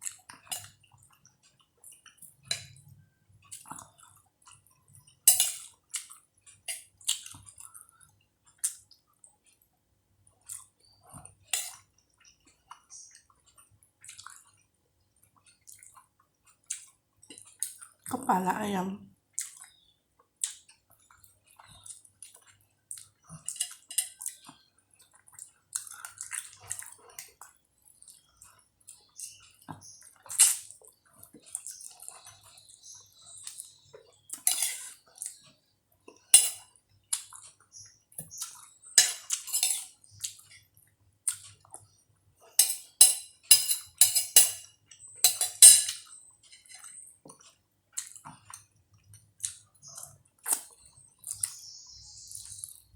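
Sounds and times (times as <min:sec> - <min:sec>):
spoon clinking against dish: 0:05.2 - 0:05.7, 0:36.4 - 0:36.6, 0:39.0 - 0:40.0, 0:42.6 - 0:46.9.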